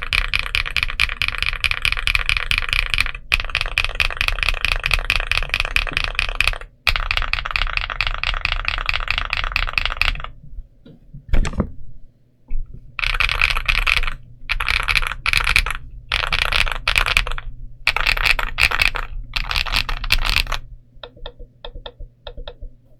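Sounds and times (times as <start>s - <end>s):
mechanical keyboard key clacks: 13.0s - 22.7s.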